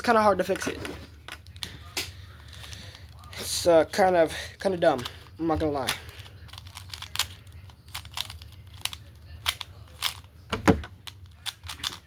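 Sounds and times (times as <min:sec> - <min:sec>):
plastic puzzle cubes clicking: 0:05.8 - 0:10.3, 0:11.0 - 0:12.0.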